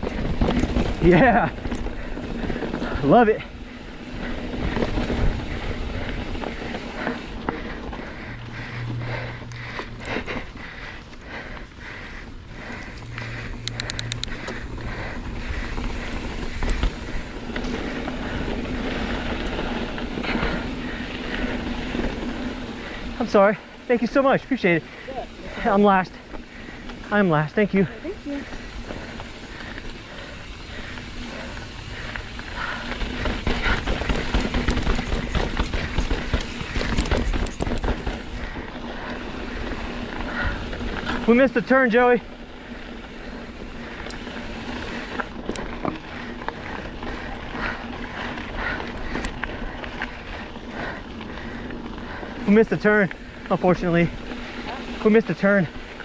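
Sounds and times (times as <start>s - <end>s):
bike clattering over rocks: 0.0s - 2.2s, 15.7s - 23.7s, 32.9s - 38.4s
bike knocks and rattles: 0.0s - 3.0s, 32.5s - 38.4s
tyres rumbling on rock: 0.0s - 8.4s, 12.6s - 41.5s
bike freewheel ticking: 0.0s - 56.0s.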